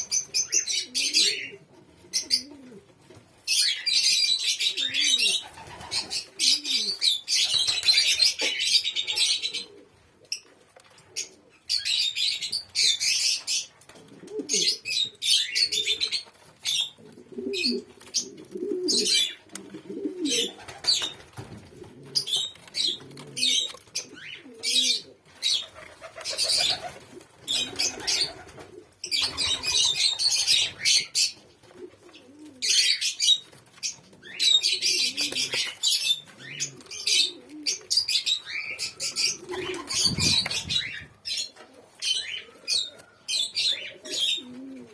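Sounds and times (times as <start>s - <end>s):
low dove cooing: 0.0s - 10.4s, 11.0s - 44.9s
doves flapping wings: 5.4s - 6.2s, 20.4s - 23.4s, 25.6s - 30.8s, 39.3s - 41.2s.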